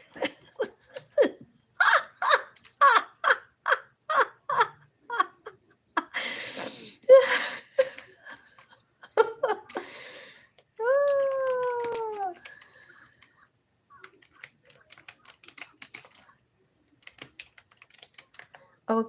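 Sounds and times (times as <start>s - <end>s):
person laughing: 0.0s - 10.0s.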